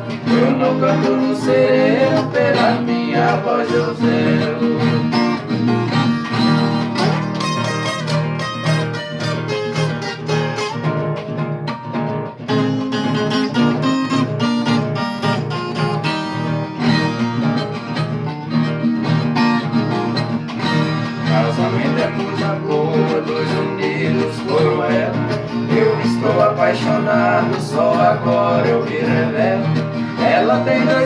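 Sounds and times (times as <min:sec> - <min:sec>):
plucked folk guitar: 0:00.0 - 0:31.0.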